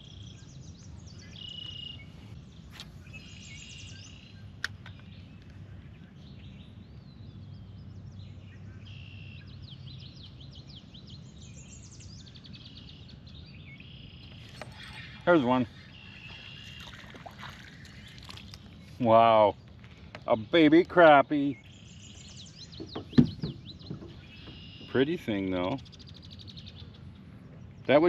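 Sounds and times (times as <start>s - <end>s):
birds singing trilled phrases: 0.0s - 28.0s.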